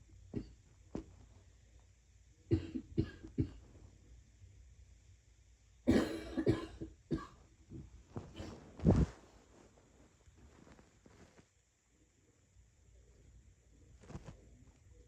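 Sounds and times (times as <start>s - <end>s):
person coughing: 2.5s - 3.6s, 5.9s - 7.4s.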